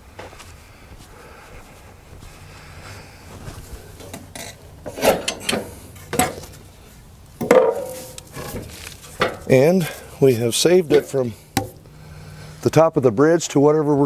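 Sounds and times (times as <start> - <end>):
wooden timbers knocking: 7.4 - 9.6.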